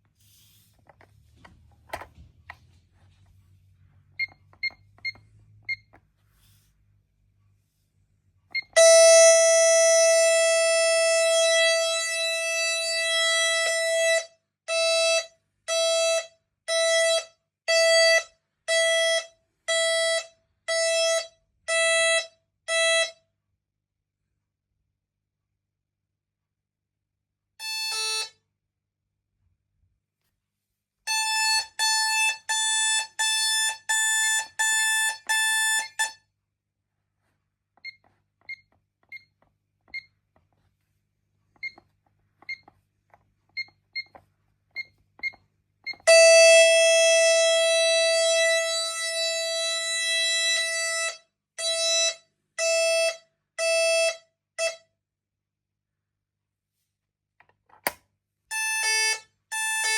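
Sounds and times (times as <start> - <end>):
low steady alarm tone: 8.6 - 23.2, 31.1 - 36.2, 45.9 - 54.8.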